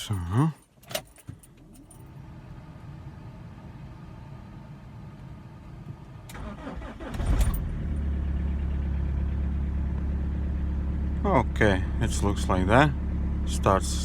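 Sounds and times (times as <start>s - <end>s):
diesel engine idling: 1.6s - 14.0s
diesel engine starter cranking: 6.2s - 8.8s.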